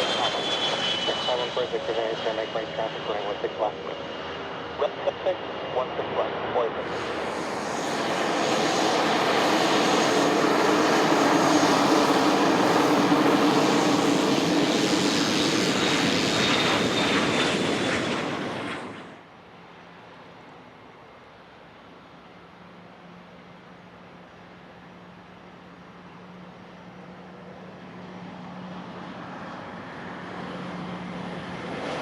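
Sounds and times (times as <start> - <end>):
jet engines whining: 0.0 - 19.2.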